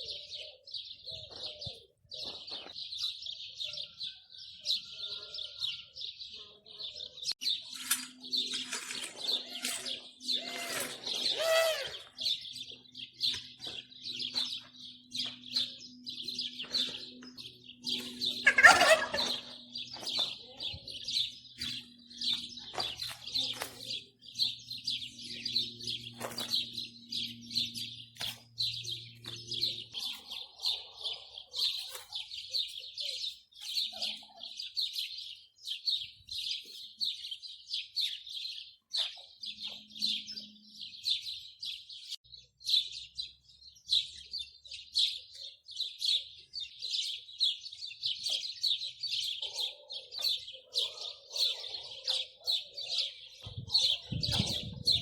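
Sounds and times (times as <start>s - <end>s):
small birds chirping: 0.0s - 55.0s.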